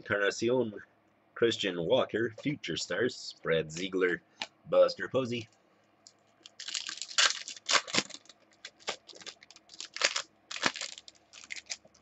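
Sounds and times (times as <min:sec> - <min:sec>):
wrappers crinkling: 0:06.4 - 0:12.0.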